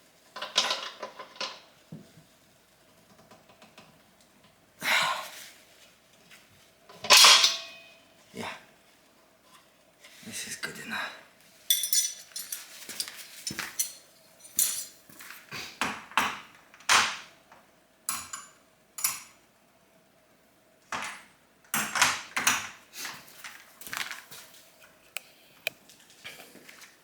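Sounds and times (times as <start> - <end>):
metal tools clinking and clanking: 7.0 - 7.9, 11.7 - 15.0.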